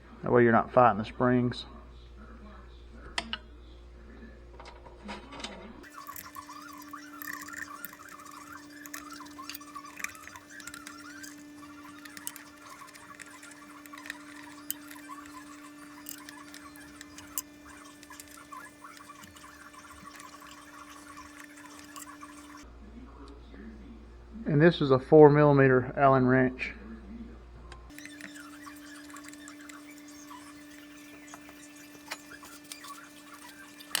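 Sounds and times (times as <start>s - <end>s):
allen wrench turning screws: 5.8s - 22.6s, 27.9s - 34.0s.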